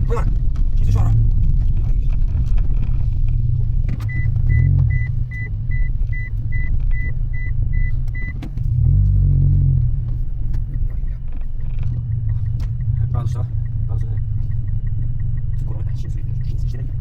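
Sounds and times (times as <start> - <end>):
road and engine rumble: 0.0 - 17.0
electronic warning beeps: 4.1 - 8.4, 11.9 - 17.0.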